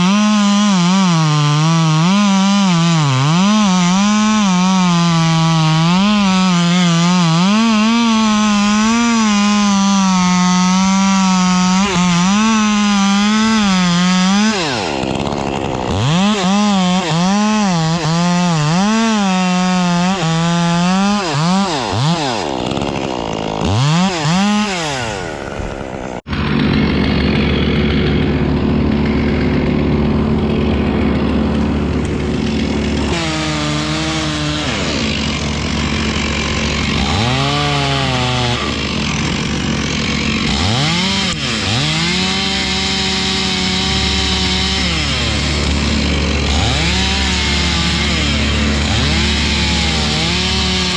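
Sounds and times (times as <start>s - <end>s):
chainsaw cutting wood: 0.0s - 50.9s
steady lower engine sound: 42.2s - 50.9s.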